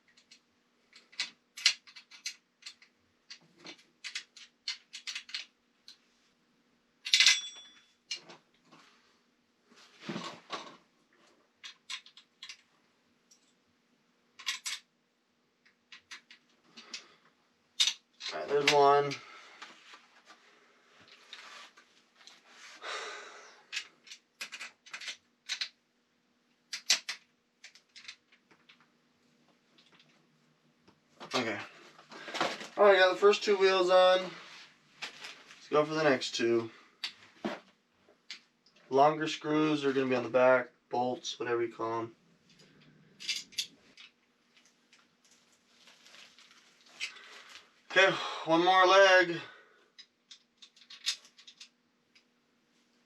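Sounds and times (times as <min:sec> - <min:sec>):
metal clank with ring: 0:07.3 - 0:07.9
scraping rustle: 0:19.6 - 0:22.8.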